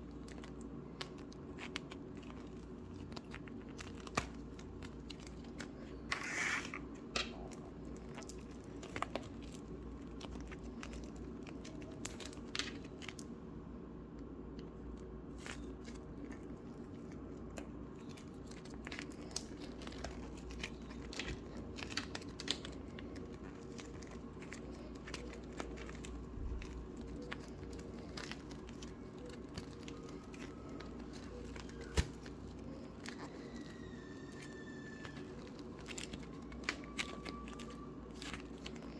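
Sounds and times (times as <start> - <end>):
slime crackling and clicking: 0.0 - 13.3, 15.3 - 38.9
steady low hum: 0.0 - 38.9.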